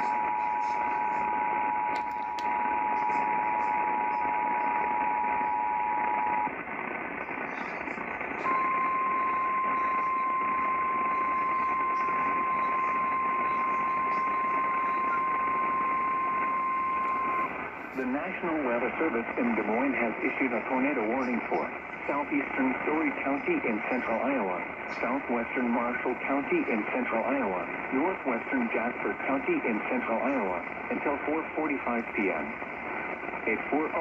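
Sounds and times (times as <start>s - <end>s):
radio static: 0.0s - 34.0s
single-tone warning alarm: 8.4s - 17.5s.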